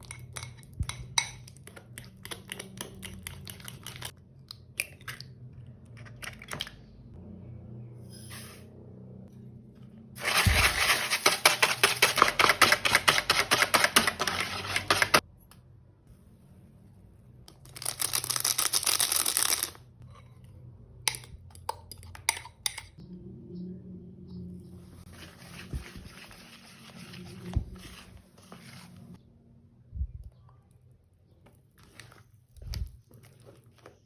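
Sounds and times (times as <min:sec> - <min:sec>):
utensil beating batter in bowl: 0:10.2 - 0:15.2.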